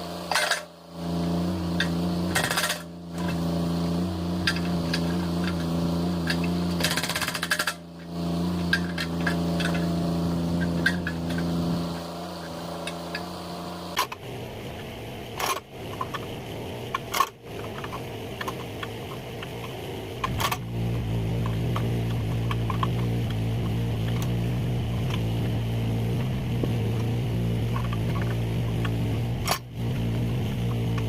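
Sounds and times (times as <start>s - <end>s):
excavator diesel engine running: 0.0s - 31.0s.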